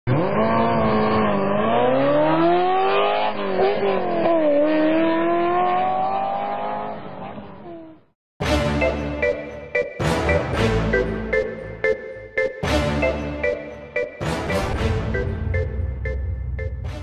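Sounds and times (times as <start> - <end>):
car engine revving: 0.1 - 7.9.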